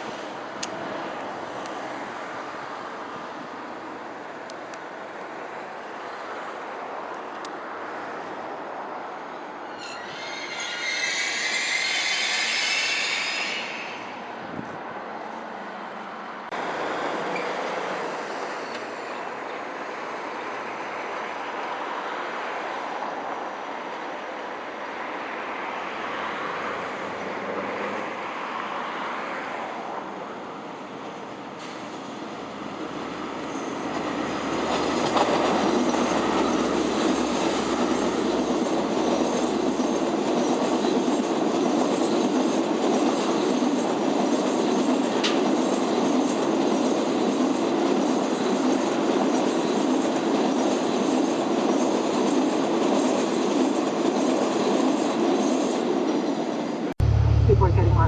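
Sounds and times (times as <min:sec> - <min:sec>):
train rushing on rails: 0:00.0 - 0:58.0
wheels squealing on rail: 0:09.6 - 0:14.3, 0:33.3 - 0:52.4
faint low engine hum: 0:57.0 - 0:58.0.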